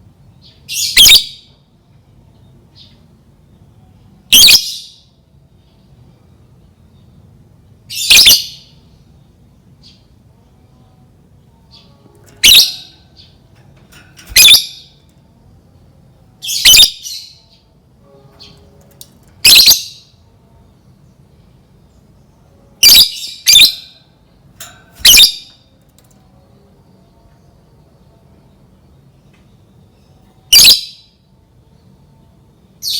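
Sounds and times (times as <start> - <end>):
faint low hum: 0.0 - 32.9
bird squawking: 12.4 - 12.9, 14.3 - 14.8, 16.5 - 17.2, 19.4 - 19.9, 22.8 - 23.8, 25.0 - 25.5.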